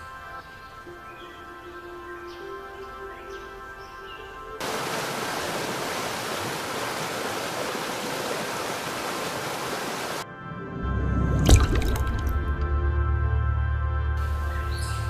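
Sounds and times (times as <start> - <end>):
rushing water: 4.6 - 10.2, 11.4 - 12.6.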